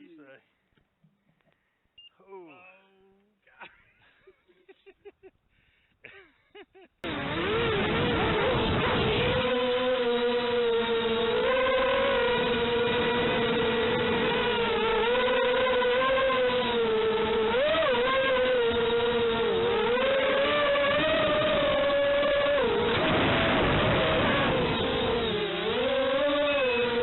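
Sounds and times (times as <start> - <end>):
drone motors whining: 7.0 - 27.0.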